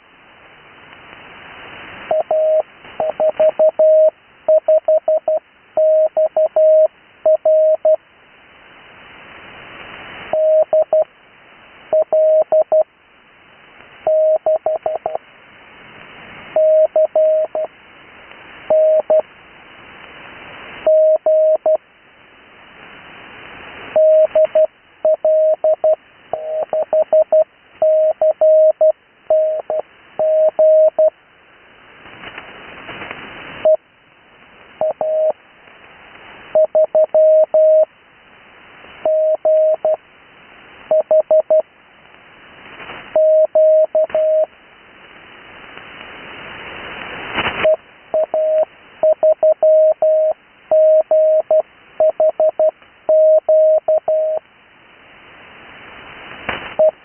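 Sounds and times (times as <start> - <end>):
morse code beeps: 2.1 - 8.0, 10.3 - 11.0, 11.9 - 12.8, 14.1 - 15.2, 16.6 - 17.7, 18.7 - 19.2, 20.9 - 21.8, 24.0 - 31.1, 34.8 - 35.4, 36.6 - 37.9, 39.0 - 40.0, 40.9 - 41.6, 43.2 - 44.5, 47.6 - 54.4
radio band hiss: 41.9 - 43.2, 43.9 - 49.0, 54.8 - 57.0.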